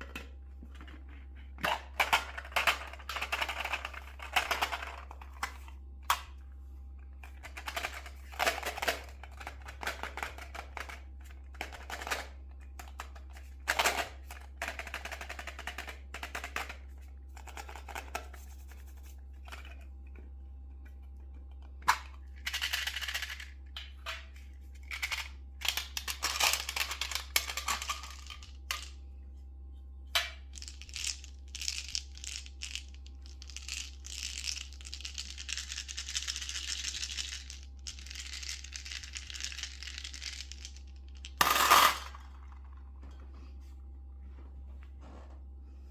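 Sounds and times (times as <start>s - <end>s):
candies clattering into metal bowl: 30.2s - 42.7s.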